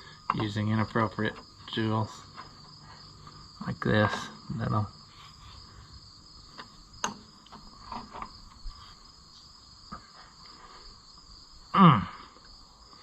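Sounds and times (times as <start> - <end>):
crickets chirping: 0.0 - 13.0
tools clicking and tapping: 6.5 - 8.3
person vocalizing: 11.7 - 12.4.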